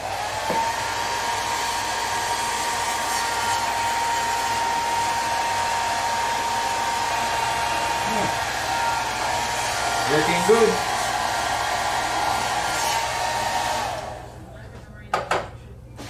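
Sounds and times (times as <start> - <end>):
hot-air blower running: 0.0 - 14.8.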